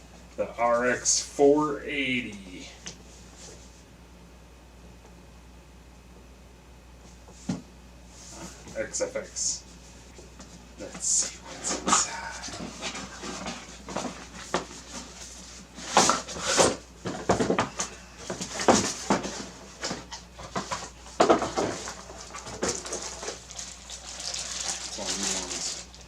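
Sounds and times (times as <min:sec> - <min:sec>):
cardboard and plastic rustling: 0:10.4 - 0:26.0.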